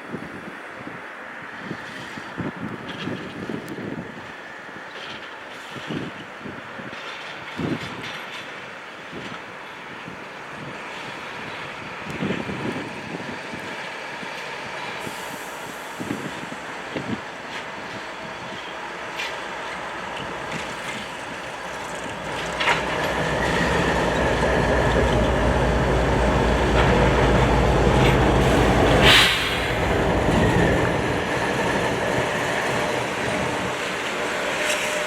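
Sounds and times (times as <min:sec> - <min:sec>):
train engine rumble: 0:00.0 - 0:35.0
loud burst of noise: 0:28.0 - 0:31.3.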